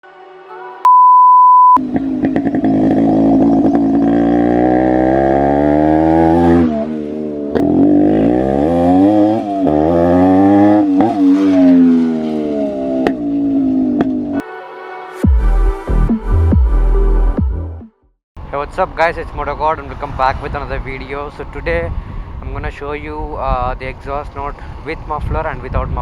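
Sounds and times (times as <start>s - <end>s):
loud steady beep: 0.8s - 1.8s
motorcycle engine revving: 1.8s - 14.4s.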